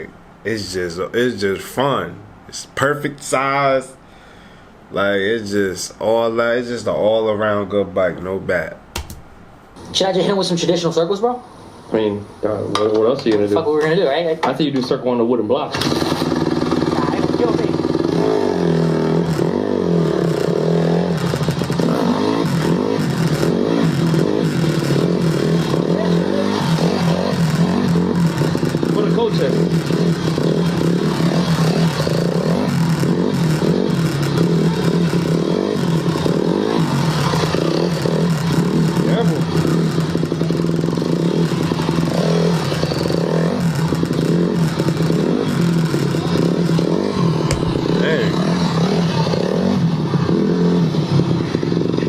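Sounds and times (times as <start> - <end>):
dirt bike engine revving: 15.7 - 52.0.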